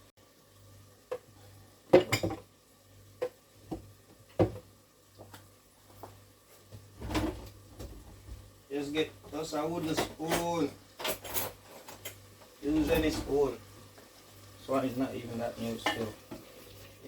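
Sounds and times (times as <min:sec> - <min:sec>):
pots and utensils clattering: 0:01.1 - 0:02.5, 0:04.3 - 0:08.5, 0:09.4 - 0:13.6, 0:15.6 - 0:16.9.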